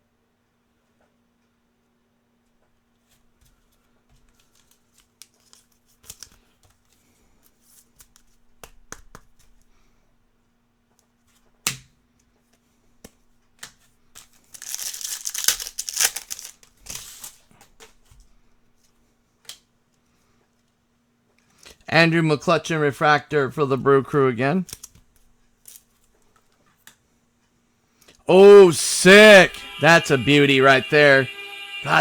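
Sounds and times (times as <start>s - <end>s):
foil wrappers tearing and crinkling: 14.2s - 17.4s.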